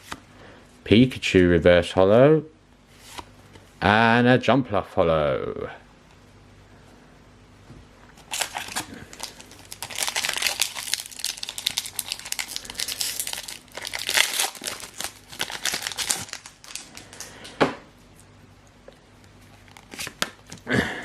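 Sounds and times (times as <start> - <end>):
foil wrapper crinkling and tearing: 8.2 - 17.4, 19.6 - 20.3.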